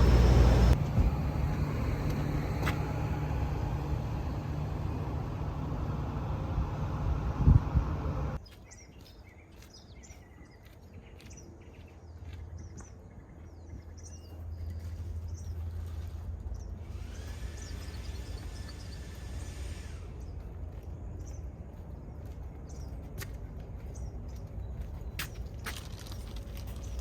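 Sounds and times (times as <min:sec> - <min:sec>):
low steady hum: 0:00.0 - 0:08.4
birds chirping: 0:08.1 - 0:27.0.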